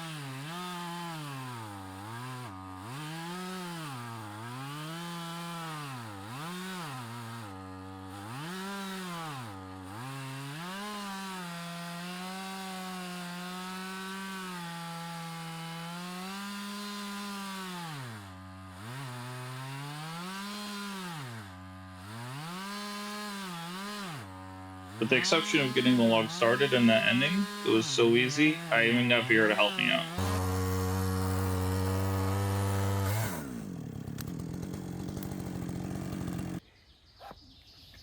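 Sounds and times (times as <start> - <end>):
chainsaw ripping a log: 0.0 - 24.9, 30.2 - 36.6.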